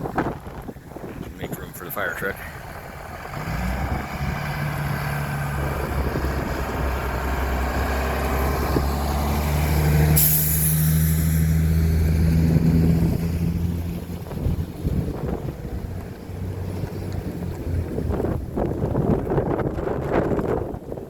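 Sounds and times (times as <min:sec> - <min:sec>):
fire truck diesel engine passing: 0:00.5 - 0:19.8
air brake hiss: 0:10.2 - 0:11.3.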